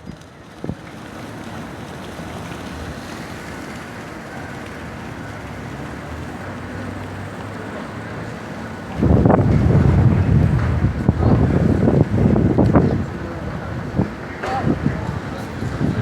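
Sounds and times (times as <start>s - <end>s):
low engine hum: 0.0s - 16.0s
wind on microphone: 8.5s - 16.0s.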